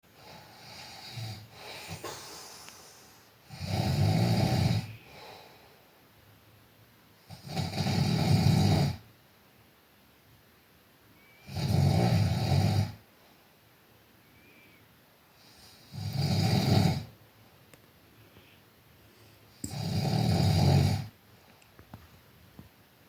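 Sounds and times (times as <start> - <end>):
dog snoring: 0.2 - 2.0, 3.4 - 5.3, 7.2 - 9.0, 11.4 - 13.0, 15.4 - 17.1, 19.6 - 21.1.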